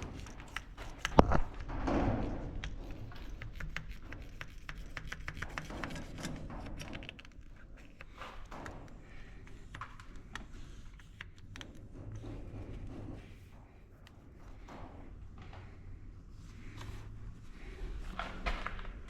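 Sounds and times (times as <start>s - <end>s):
small objects clicking: 0.0s - 1.6s.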